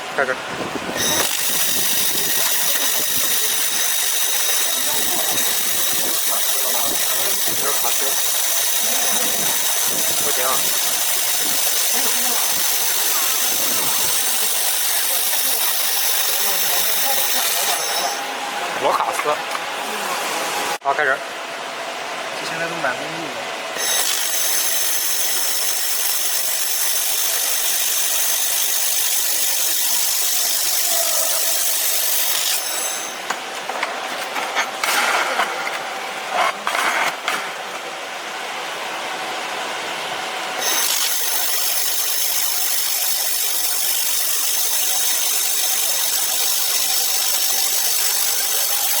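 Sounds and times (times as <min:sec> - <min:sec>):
laser welder hissing and whining: 0:00.9 - 0:18.3, 0:23.8 - 0:33.3, 0:40.6 - 0:49.0.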